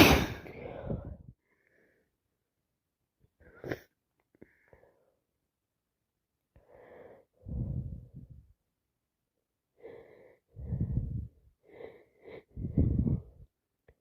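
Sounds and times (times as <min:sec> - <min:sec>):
congested breathing through nose: 0:09.8 - 0:13.5.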